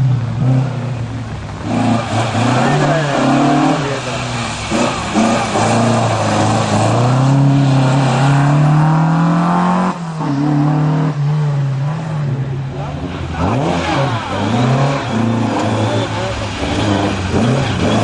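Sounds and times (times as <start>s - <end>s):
rally car engine accelerating: 0.0s - 18.0s.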